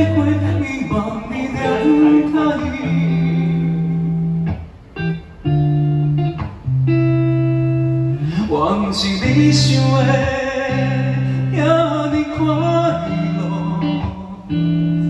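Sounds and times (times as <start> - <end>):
person singing: 0.0 - 4.0, 8.2 - 15.0
plucked guitar: 0.0 - 15.0.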